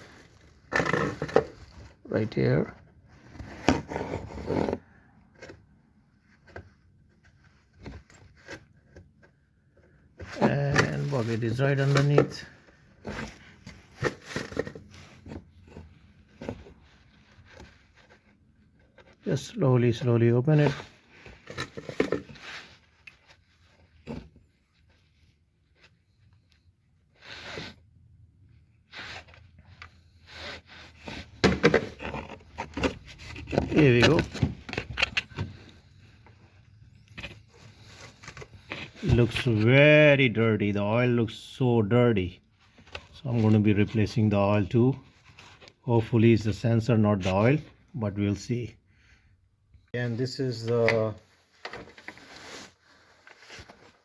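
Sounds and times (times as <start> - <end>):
tool scraping: 28.8 - 39.7.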